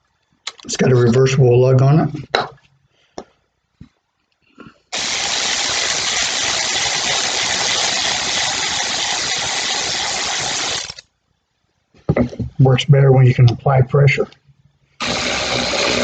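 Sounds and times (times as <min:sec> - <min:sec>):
cordless power wrench motor running: 0:05.0 - 0:11.0, 0:15.0 - 0:16.0.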